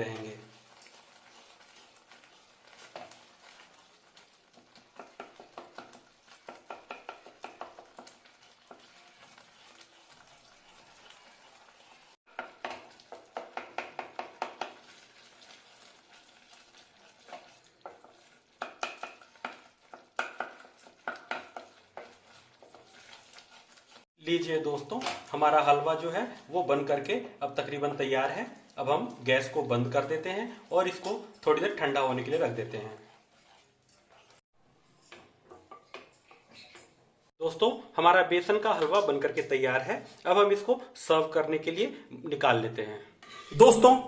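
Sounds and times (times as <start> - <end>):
spatula scraping a pan: 0.0 - 24.1, 30.4 - 36.9.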